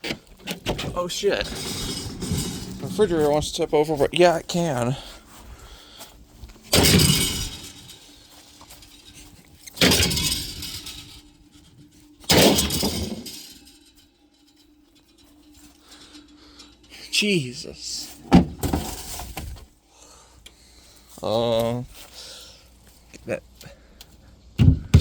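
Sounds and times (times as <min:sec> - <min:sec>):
rattle: 0:00.2 - 0:05.1, 0:06.4 - 0:17.2, 0:17.8 - 0:19.7
heavy crashing impacts: 0:00.7 - 0:04.4, 0:06.6 - 0:11.4, 0:12.2 - 0:13.8.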